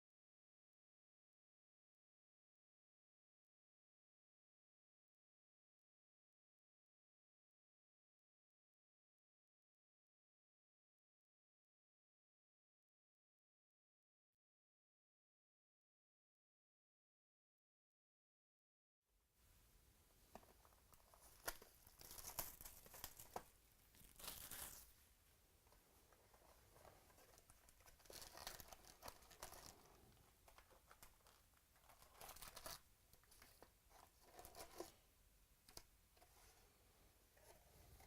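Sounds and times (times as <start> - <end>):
card wrappers tearing and crinkling: 21.3 - 23.4, 24.0 - 24.9, 27.7 - 29.8, 30.8 - 32.8.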